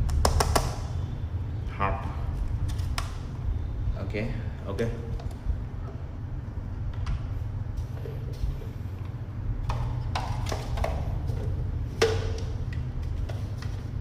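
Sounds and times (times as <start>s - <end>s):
steady low hum: 0.0s - 14.0s
plastic accessories knocking and clicking: 0.1s - 0.8s, 9.6s - 13.8s.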